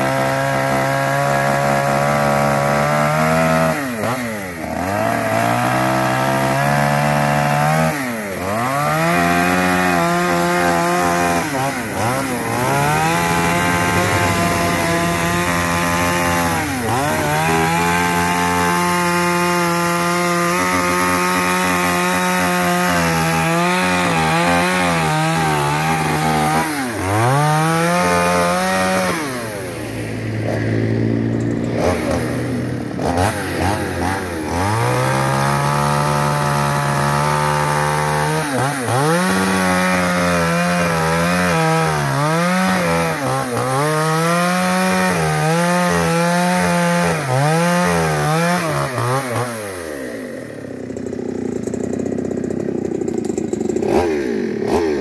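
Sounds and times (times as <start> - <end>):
chainsaw cutting log: 0.0 - 55.0.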